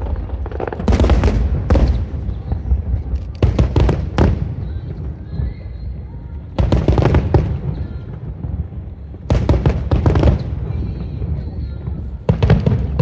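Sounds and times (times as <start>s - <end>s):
fireworks bursting: 0.0s - 13.0s.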